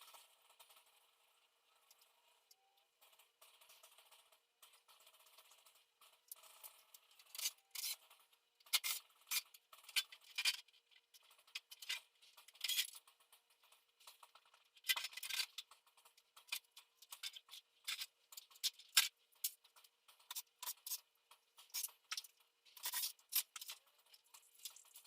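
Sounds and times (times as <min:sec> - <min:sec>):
small hard objects clicking: 0:03.0 - 0:25.0.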